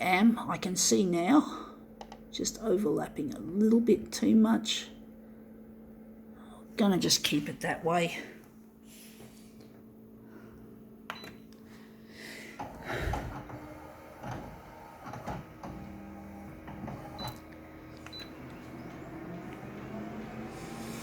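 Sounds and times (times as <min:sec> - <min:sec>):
irregular clicks and knocks: 0:02.0 - 0:02.2
photocopier hum: 0:08.2 - 0:21.0
photocopier mechanical whirring: 0:12.4 - 0:21.0.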